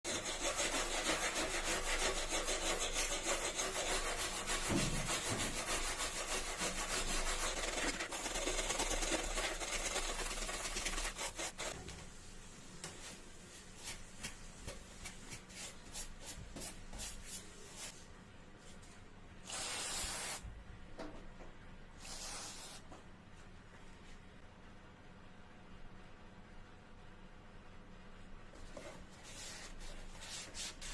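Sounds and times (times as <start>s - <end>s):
sanding metal by hand: 0.1s - 11.8s
short hissing bursts: 19.4s - 20.4s, 22.0s - 22.8s.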